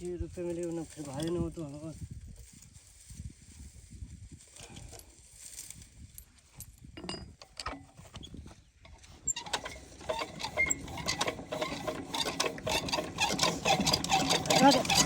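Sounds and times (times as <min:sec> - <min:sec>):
metal mechanism clicking and rattling: 0:09.3 - 0:15.0.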